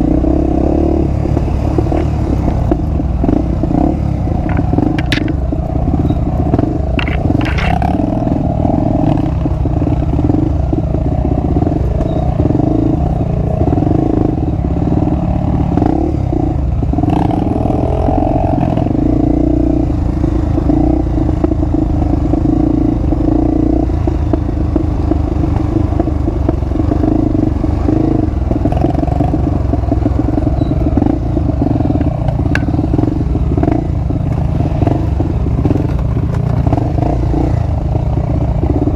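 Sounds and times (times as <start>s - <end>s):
motorcycle engine running: 0.0s - 38.9s
rattles and knocks from rough ground: 4.4s - 8.0s, 35.6s - 36.8s.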